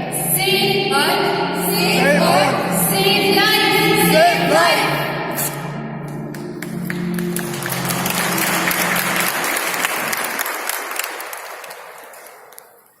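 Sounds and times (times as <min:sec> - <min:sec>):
audience applauding: 0:06.3 - 0:13.0.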